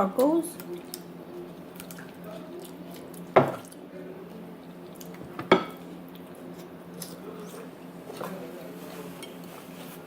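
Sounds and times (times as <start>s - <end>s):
quiet eating sounds: 0.0s - 10.0s
dishes clacking: 5.3s - 5.8s.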